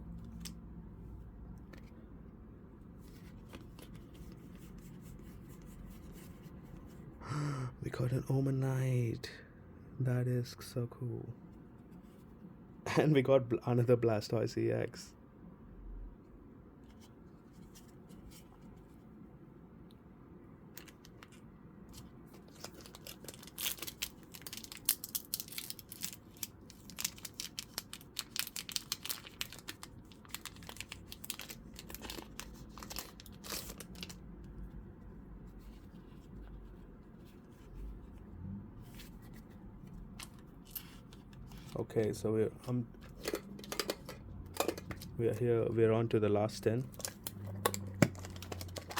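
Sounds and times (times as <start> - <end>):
foil wrapper tearing and crinkling: 22.5 - 34.2, 48.1 - 48.9.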